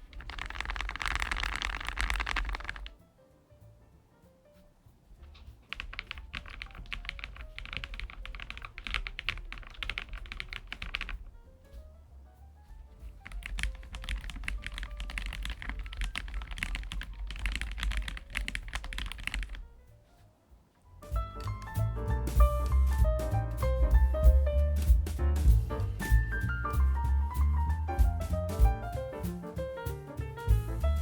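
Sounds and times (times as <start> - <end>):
fast typing on mechanical keyboard: 0.0 - 3.0, 5.6 - 11.2, 13.2 - 19.7
background music: 20.9 - 31.0.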